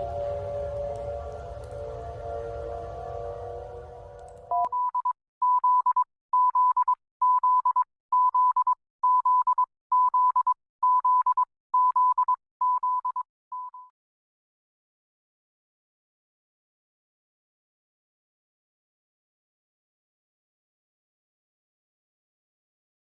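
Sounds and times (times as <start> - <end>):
alarm chord of steady tones: 0.0 - 4.7
rapid high beeping alarm: 0.0 - 4.7.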